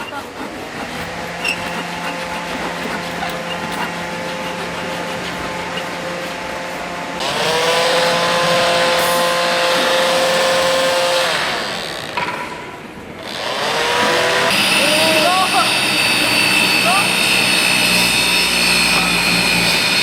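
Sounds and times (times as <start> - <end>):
power tool motor whine: 1.0 - 12.2, 13.2 - 20.0.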